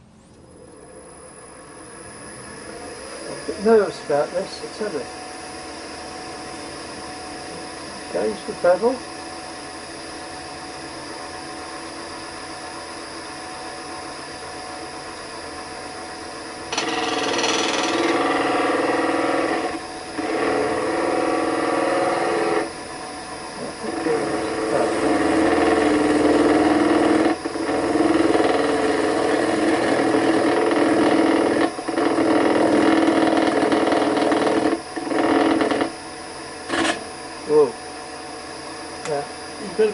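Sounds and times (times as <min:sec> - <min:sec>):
wood lathe humming: 0:01.6 - 0:09.1, 0:14.0 - 0:37.5
lathe knife cutting wood: 0:16.7 - 0:22.8, 0:23.6 - 0:35.9.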